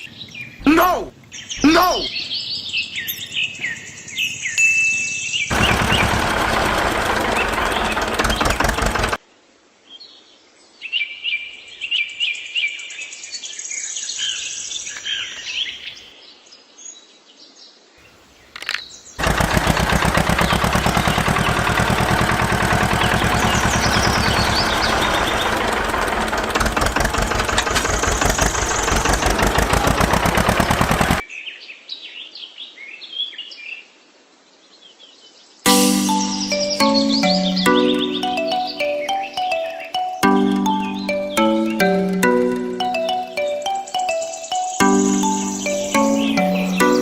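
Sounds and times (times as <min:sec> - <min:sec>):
small birds chirping: 0:00.0 - 0:09.2, 0:17.0 - 0:33.6, 0:35.0 - 0:47.0
woodworking power tool motor: 0:05.5 - 0:09.2, 0:19.2 - 0:31.2.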